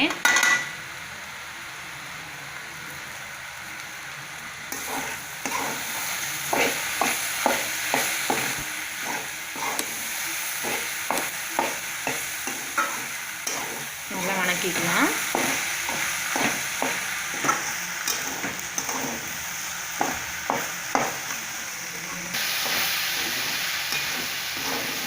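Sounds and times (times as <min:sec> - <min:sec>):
vegetables sizzling in oil: 0:00.0 - 0:25.0
spatula scraping a pan: 0:04.7 - 0:19.4, 0:22.4 - 0:25.0.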